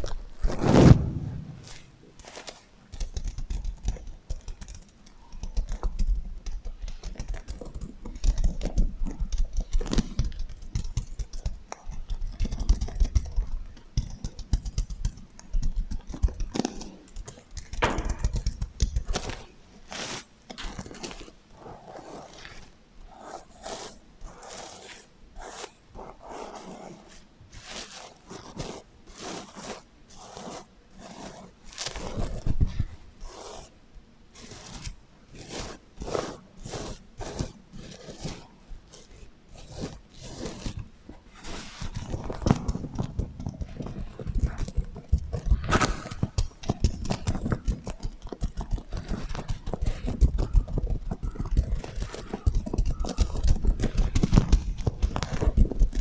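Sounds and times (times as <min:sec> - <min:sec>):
sequins scratching: 0:00.0 - 0:56.0.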